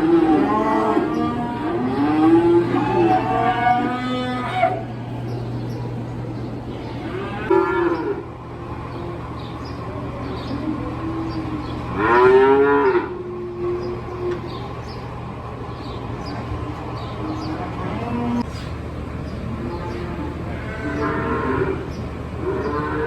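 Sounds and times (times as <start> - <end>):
cattle mooing: 0.0 - 5.4, 6.7 - 9.4, 10.5 - 14.6, 16.6 - 18.6, 19.4 - 23.0
steady low hum: 0.0 - 23.0.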